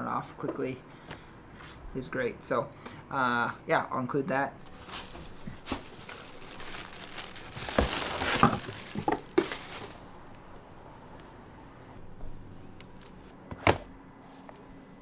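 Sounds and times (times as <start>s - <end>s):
packaging crinkling and rustling: 4.6s - 10.1s.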